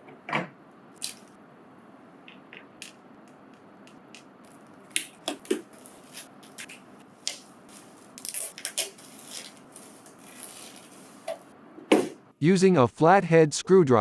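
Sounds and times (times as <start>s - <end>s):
packaging and parts being handled: 4.4s - 11.5s.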